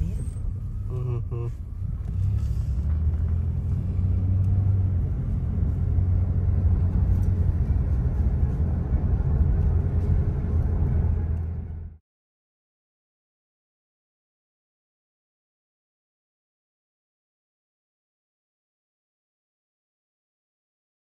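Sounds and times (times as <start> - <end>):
car interior road and engine noise: 0.0 - 12.0.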